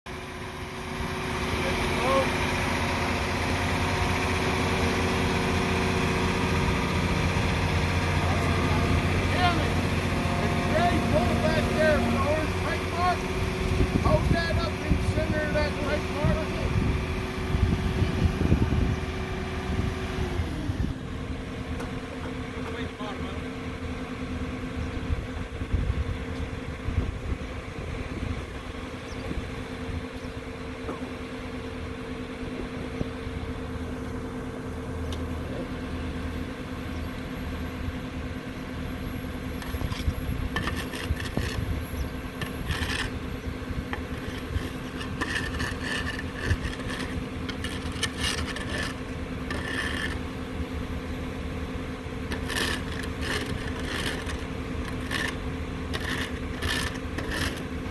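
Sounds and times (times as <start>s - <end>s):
construction machine engine humming: 0.1s - 57.9s
scraping and clanking: 8.1s - 14.4s, 39.5s - 43.2s, 43.9s - 50.3s, 52.3s - 57.9s.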